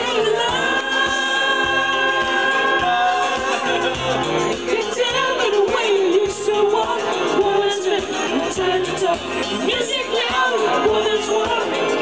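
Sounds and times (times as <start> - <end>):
bass line with steady beat: 0.0 - 12.0
choir singing held chords: 0.0 - 12.0.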